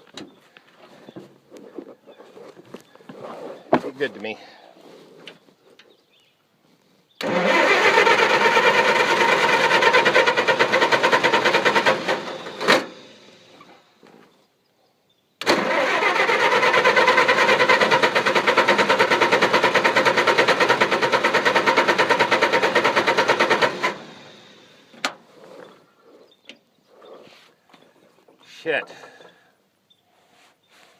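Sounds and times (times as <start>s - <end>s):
engine cranking: 7.2s - 13.8s, 15.4s - 25.8s.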